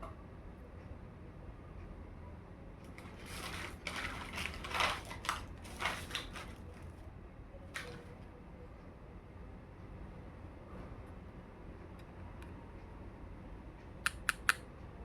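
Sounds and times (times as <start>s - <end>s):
packaging crackling and rustling: 2.8s - 7.0s, 7.7s - 8.1s
sharp click: 14.0s - 14.7s.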